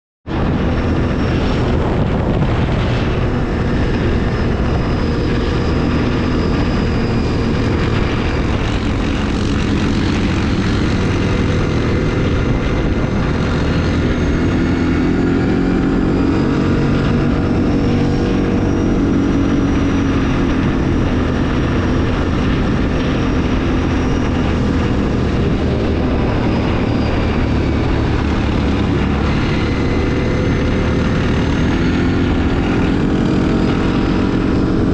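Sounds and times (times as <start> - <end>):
atv engine running: 0.3 - 34.9.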